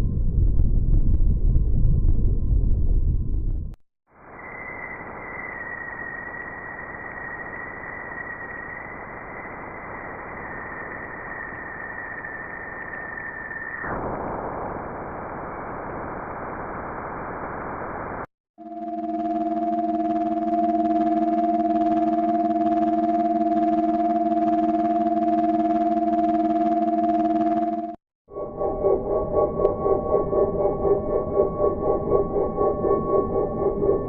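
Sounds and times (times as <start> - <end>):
high whistling tone: 4.3 - 13.9
static-like hiss: 13.9 - 18.3.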